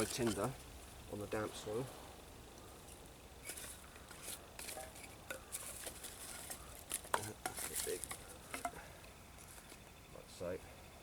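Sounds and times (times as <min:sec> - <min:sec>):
sticks rustling and crackling: 0:00.0 - 0:01.4, 0:02.5 - 0:09.8.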